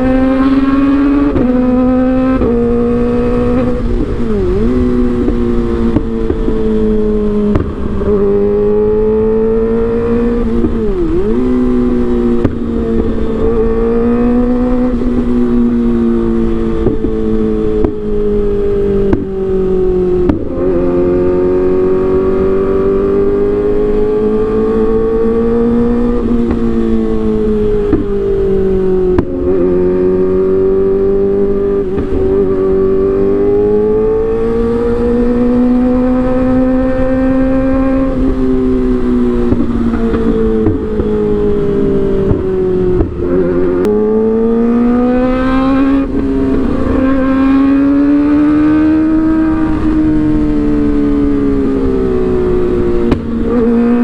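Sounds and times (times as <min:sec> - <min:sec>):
motorcycle engine revving high: 0:00.0 - 0:54.0
exhaust pops: 0:03.6 - 0:06.7, 0:07.4 - 0:08.4, 0:16.7 - 0:18.1, 0:19.0 - 0:19.4, 0:20.2 - 0:20.6, 0:27.8 - 0:28.4, 0:29.0 - 0:29.7, 0:39.4 - 0:44.0, 0:52.7 - 0:53.7.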